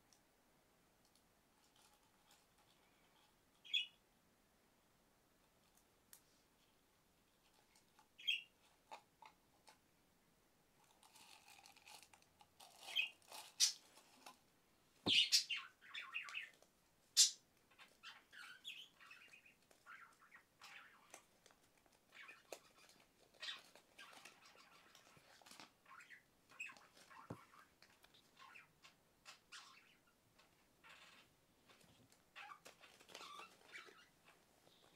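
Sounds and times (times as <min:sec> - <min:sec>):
plastic squeaks: 0:30.8 - 0:34.9.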